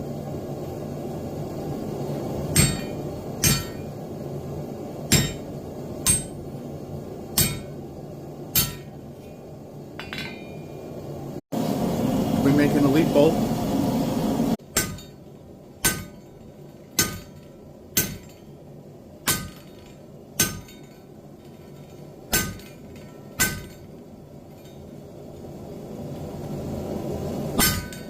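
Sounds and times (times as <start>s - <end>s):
hammer striking steel: 2.5s - 3.9s, 5.1s - 6.5s, 7.3s - 7.8s, 8.5s - 9.4s, 10.0s - 10.9s, 14.6s - 25.0s, 27.6s - 28.0s.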